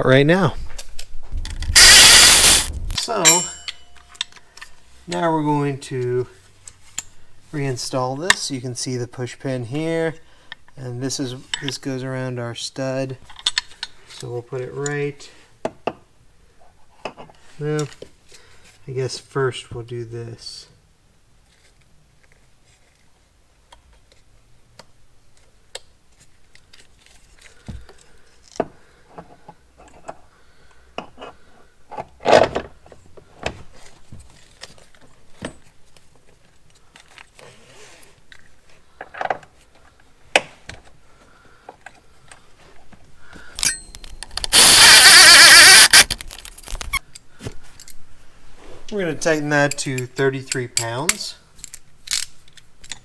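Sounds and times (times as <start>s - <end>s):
power tool burst: 1.5s - 3.0s, 43.6s - 47.0s
metal tools clicking and clinking: 1.5s - 4.2s, 43.6s - 47.0s.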